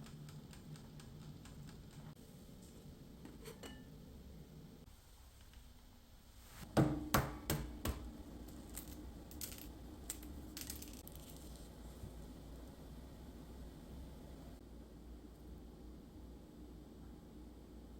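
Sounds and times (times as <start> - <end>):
kitchenware clinking: 3.3 - 3.9.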